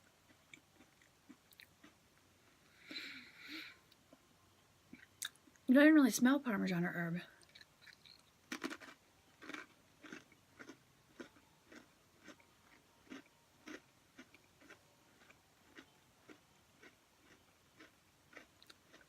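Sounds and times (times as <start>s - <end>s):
chewing crispy crackers: 0.2s - 2.0s, 7.4s - 19.0s.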